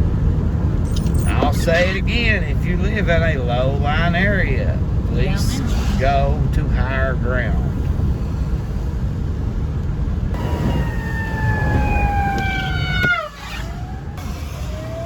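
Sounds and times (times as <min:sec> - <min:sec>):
vehicle road noise rumble: 0:00.0 - 0:15.0
emergency siren wailing: 0:10.4 - 0:15.0.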